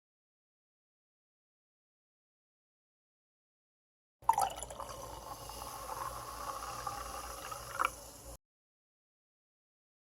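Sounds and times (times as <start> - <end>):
champagne fizzing in a glass: 4.2 - 8.4.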